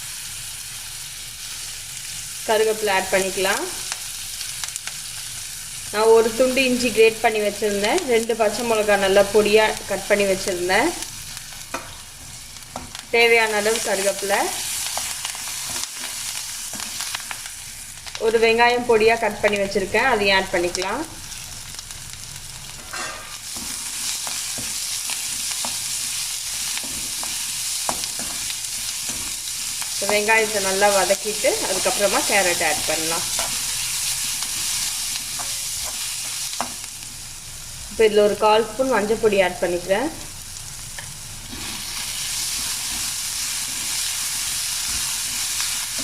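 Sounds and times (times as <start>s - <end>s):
onion sizzling in hot oil: 0.0s - 46.0s.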